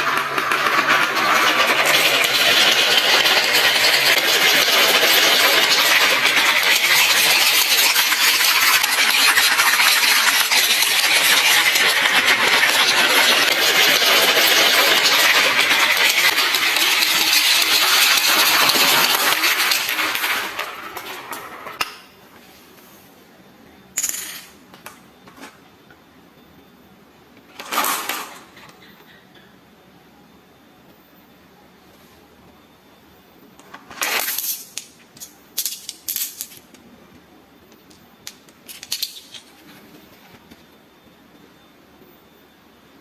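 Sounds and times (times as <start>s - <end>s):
marbles rattling down wooden run: 0.0s - 21.8s.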